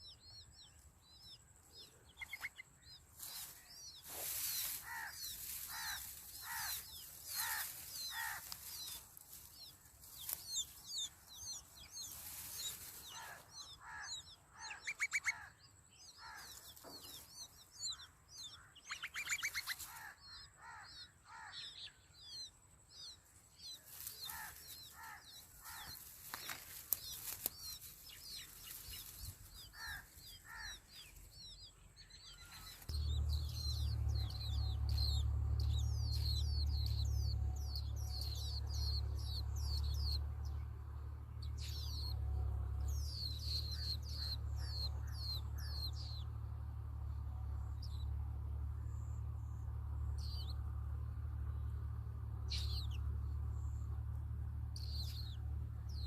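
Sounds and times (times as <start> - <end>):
nestling birds chirping: 0.0 - 56.0
rustling: 3.2 - 10.8, 23.8 - 30.2
loud low hum: 25.6 - 56.0.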